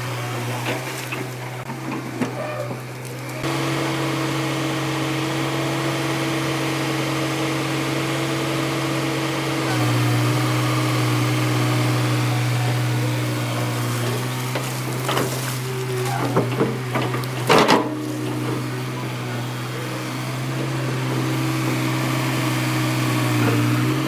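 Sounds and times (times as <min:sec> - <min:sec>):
excavator engine droning: 0:00.0 - 0:24.0.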